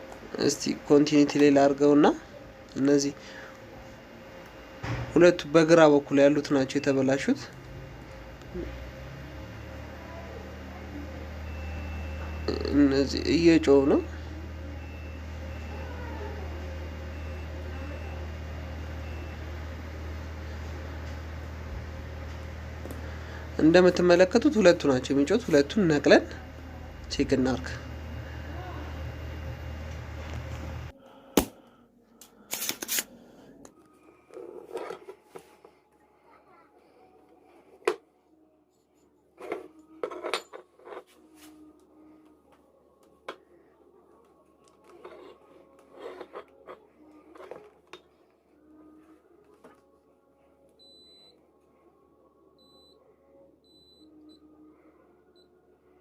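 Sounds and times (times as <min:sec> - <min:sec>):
low steady hum: 0:00.0 - 0:38.6, 0:39.4 - 0:56.0
multimeter beeping: 0:11.4 - 0:16.0, 0:50.8 - 0:51.4, 0:52.6 - 0:53.0, 0:53.7 - 0:54.5.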